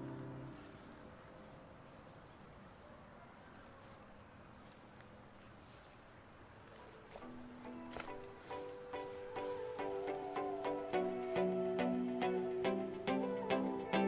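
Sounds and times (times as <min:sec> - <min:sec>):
music: 0:00.0 - 0:00.6, 0:07.3 - 0:14.0
insects trilling: 0:00.0 - 0:14.0.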